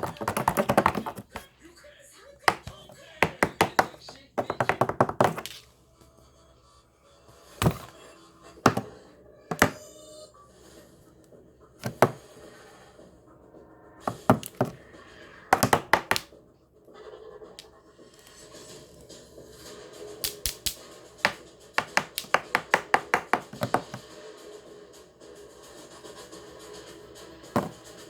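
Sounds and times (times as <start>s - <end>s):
sharp taps and thunks: 0.0s - 1.5s, 2.5s - 5.6s, 7.6s - 7.9s, 8.7s - 8.9s, 9.5s - 9.8s, 11.8s - 12.2s, 14.1s - 14.9s, 15.5s - 16.3s, 21.3s - 24.1s, 27.6s - 27.8s.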